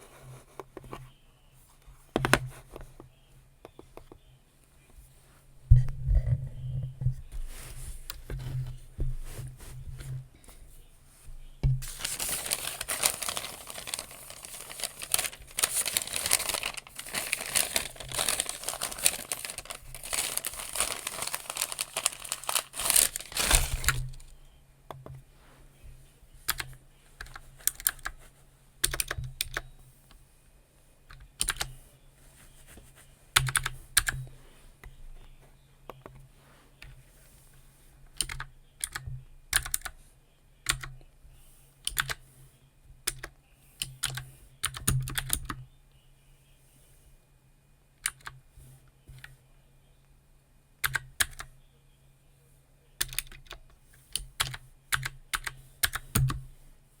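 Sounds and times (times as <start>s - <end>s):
typing on computer keyboard: 28.8s - 29.6s, 38.2s - 39.9s, 41.9s - 42.2s, 53.0s - 53.6s.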